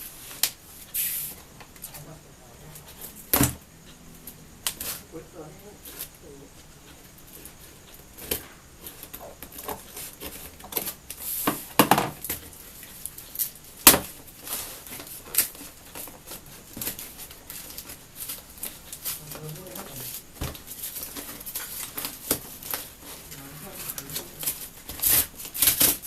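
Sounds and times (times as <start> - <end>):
objects tapping and rustling: 7.3 - 26.0.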